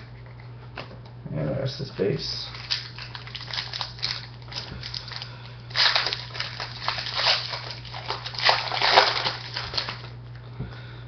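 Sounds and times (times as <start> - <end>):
steady low hum: 0.0 - 11.0
cards and wrapper rustling: 2.5 - 10.2.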